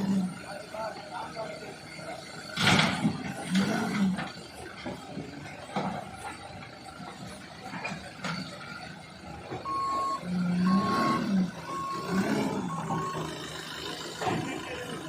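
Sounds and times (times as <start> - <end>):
diesel engine running: 0.0 - 15.0
backup alarm beeping: 9.6 - 13.4.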